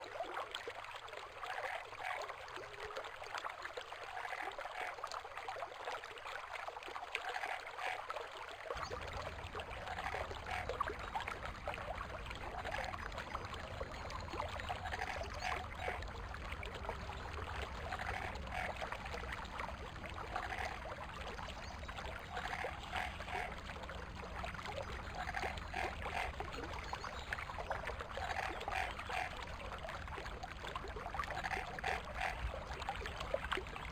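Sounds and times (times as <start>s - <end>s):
frogs croaking: 8.7s - 33.9s
stream water rushing: 8.8s - 33.9s.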